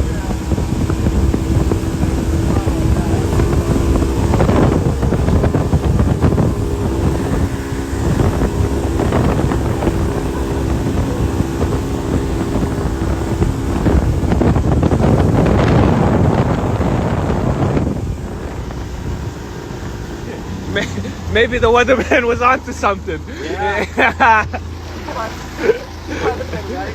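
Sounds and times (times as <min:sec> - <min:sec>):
wind buffeting microphone: 0:00.0 - 0:22.9
outboard motor running: 0:00.0 - 0:26.9.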